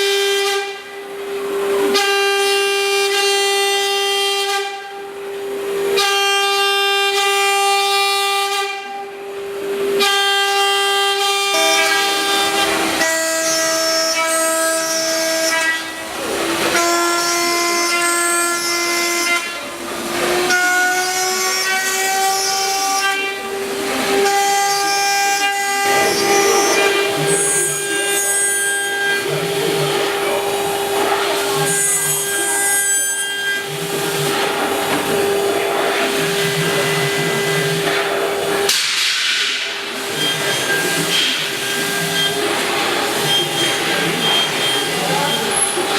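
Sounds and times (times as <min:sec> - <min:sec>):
cnc mill whining: 0:00.0 - 0:45.9.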